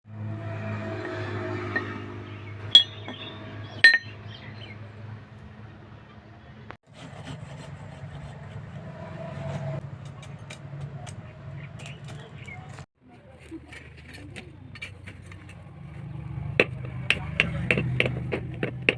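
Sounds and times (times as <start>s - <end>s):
hammer striking steel: 2.7s - 4.2s.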